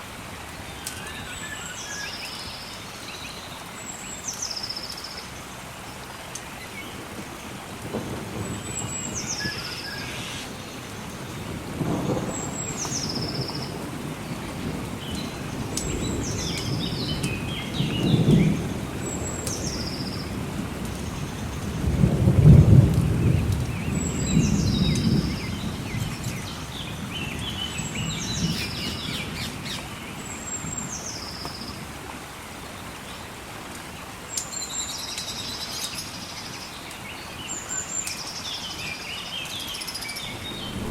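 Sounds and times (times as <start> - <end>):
rain hiss: 0.0 - 40.9
thunder rumbling: 7.1 - 29.8, 40.2 - 40.9.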